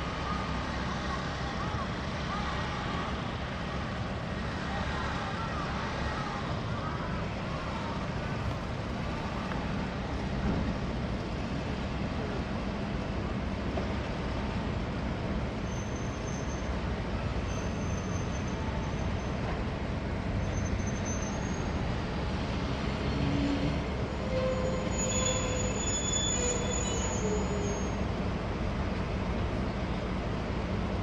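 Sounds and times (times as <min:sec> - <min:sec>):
train rumbling past: 0:00.0 - 0:31.0
steel wheels squealing: 0:15.6 - 0:16.8, 0:17.4 - 0:19.5, 0:20.4 - 0:21.8, 0:23.0 - 0:28.1.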